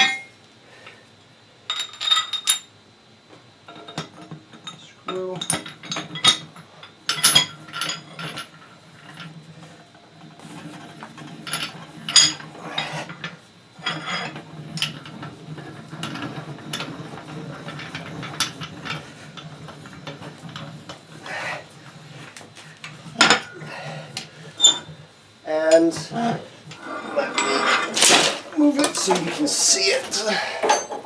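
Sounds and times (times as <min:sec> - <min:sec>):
metal clinks and knocks: 0:00.0 - 0:00.4, 0:26.8 - 0:29.4, 0:30.6 - 0:31.0
steel scraping on steel: 0:26.8 - 0:28.0.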